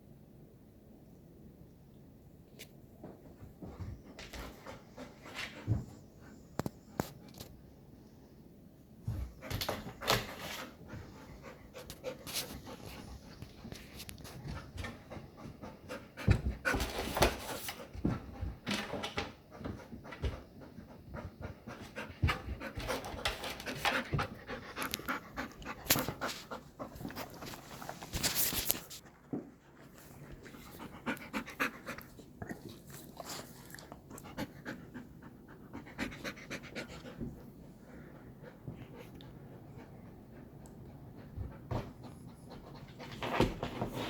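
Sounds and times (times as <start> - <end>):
dog panting: 10.6 - 16.9, 19.4 - 27.9, 29.5 - 43.2.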